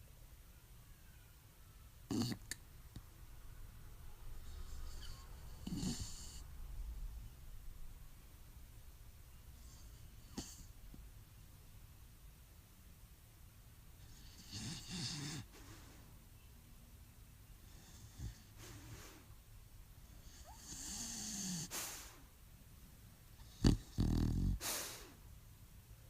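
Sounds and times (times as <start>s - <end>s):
dog snoring and snorting: 2.1s - 2.6s, 4.9s - 6.4s, 9.6s - 10.7s, 14.0s - 15.5s, 17.7s - 18.5s, 20.2s - 21.7s, 23.4s - 25.1s.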